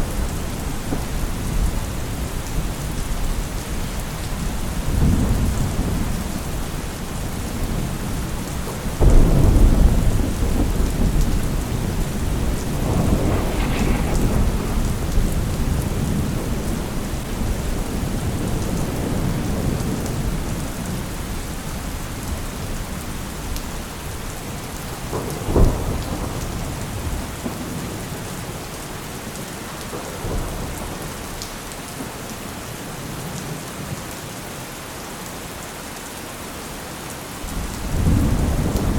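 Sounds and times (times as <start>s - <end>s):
steady rain: 0.0s - 38.9s
rolling thunder: 7.5s - 21.0s, 37.5s - 38.9s
loud thunderclap: 8.9s - 20.0s, 37.5s - 38.9s.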